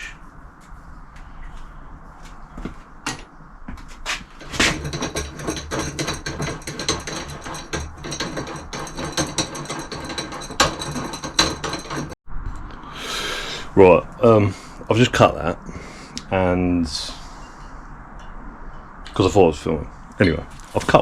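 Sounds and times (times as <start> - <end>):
saw cutting through metal: 4.4 - 12.2.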